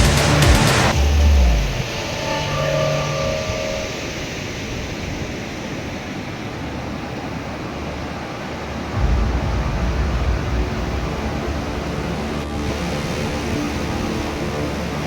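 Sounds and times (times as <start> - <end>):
stormy sea surf: 0.0 - 15.0
low rumble: 0.3 - 5.6, 8.8 - 15.0
wind on microphone: 3.1 - 14.6.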